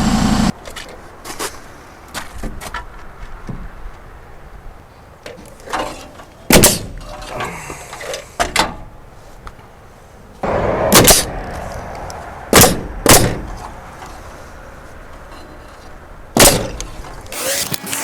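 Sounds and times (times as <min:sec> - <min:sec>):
nails hammered into wood: 0:06.5 - 0:06.9.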